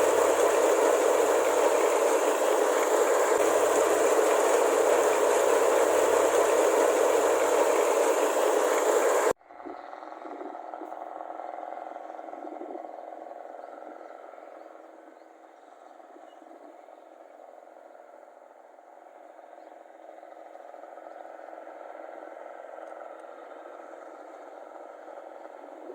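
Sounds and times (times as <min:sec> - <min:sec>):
combine harvester engine running: 0:00.0 - 0:09.4.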